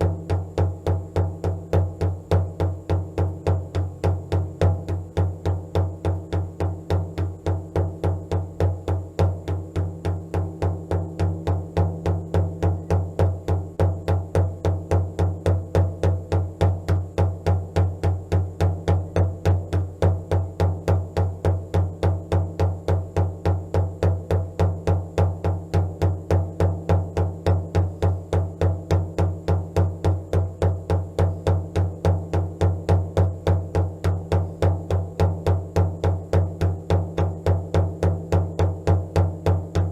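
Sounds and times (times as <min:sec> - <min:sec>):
steady drumming: 0:00.0 - 0:39.9.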